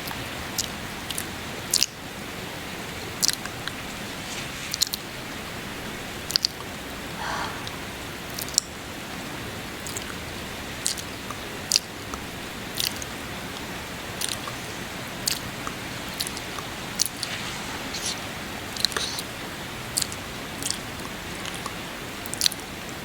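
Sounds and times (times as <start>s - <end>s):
rain hiss: 0.0s - 23.0s
breath: 7.1s - 8.6s, 18.8s - 19.3s
wet kissing smacks: 17.9s - 18.2s, 18.8s - 19.3s.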